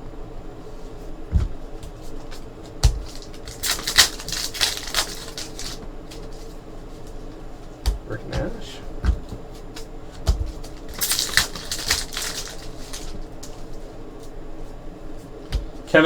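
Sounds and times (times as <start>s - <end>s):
cards rustling and sliding: 2.0s - 7.4s, 8.3s - 13.8s.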